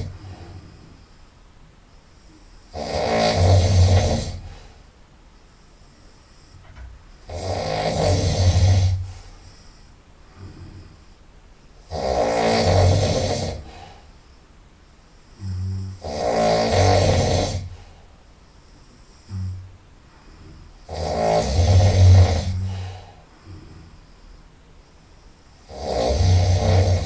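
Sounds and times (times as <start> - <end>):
person snoring loudly: 0.0 - 0.8, 2.7 - 4.6, 7.2 - 9.2, 11.8 - 13.9, 15.4 - 17.8, 19.3 - 19.7, 20.4 - 24.0, 25.6 - 27.0.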